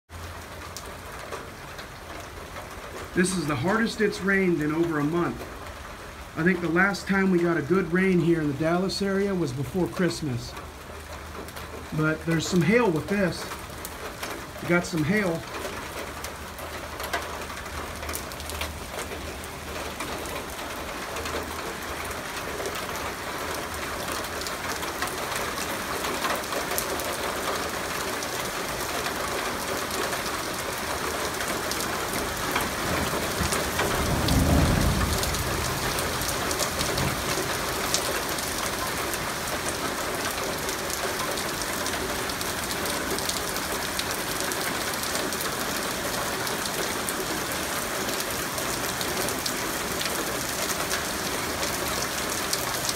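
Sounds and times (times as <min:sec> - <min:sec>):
heavy rain: 0:00.1 - 0:52.9
hailstones ticking: 0:09.6 - 0:52.9
thunder rumble: 0:32.5 - 0:37.9.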